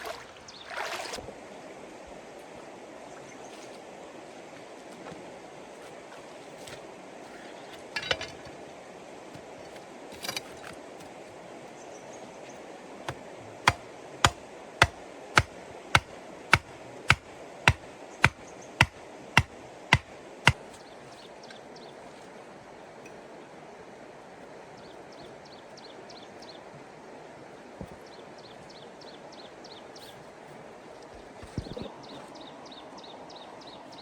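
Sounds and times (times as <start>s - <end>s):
sharp knocks: 13.7s - 20.1s.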